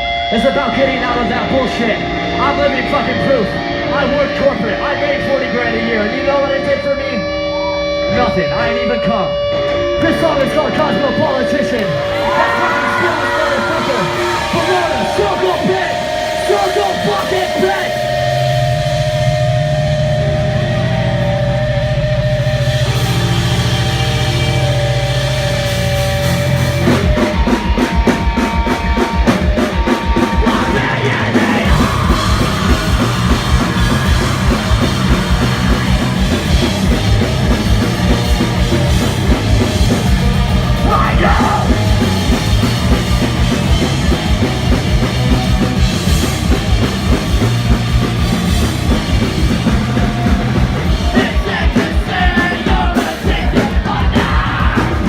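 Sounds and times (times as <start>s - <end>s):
rock band playing live: 0.0s - 55.0s
fast drumming: 11.6s - 20.0s, 22.2s - 55.0s
person yelling vocals: 12.1s - 18.1s, 40.8s - 42.0s.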